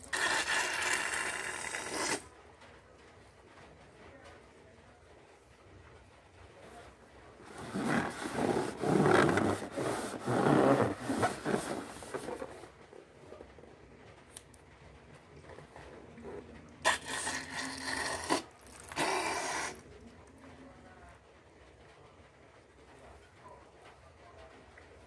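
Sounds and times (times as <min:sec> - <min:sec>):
balloon rubbing and squeaking: 0:00.0 - 0:02.2, 0:07.4 - 0:12.7, 0:16.9 - 0:19.8.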